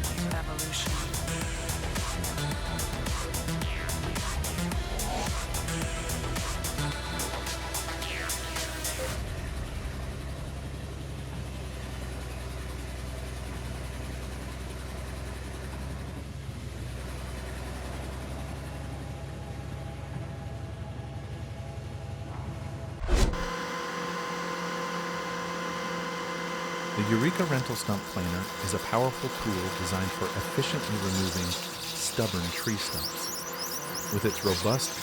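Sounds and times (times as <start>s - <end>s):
machine whine: 0.0s - 13.7s, 18.2s - 35.0s
heavy machine engine running: 0.0s - 35.0s
loud machine jolt: 23.0s - 23.5s.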